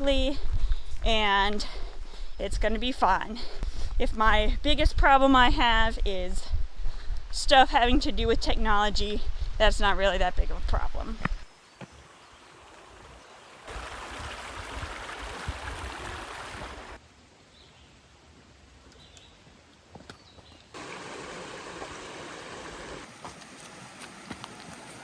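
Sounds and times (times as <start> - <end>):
stream water rushing: 12.0 - 17.0, 20.8 - 25.0.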